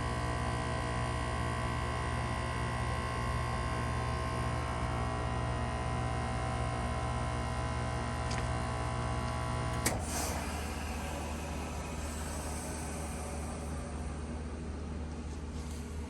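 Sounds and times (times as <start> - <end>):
heat pump compressor hum: 6.2 - 16.0
short hissing whoosh: 10.0 - 14.8.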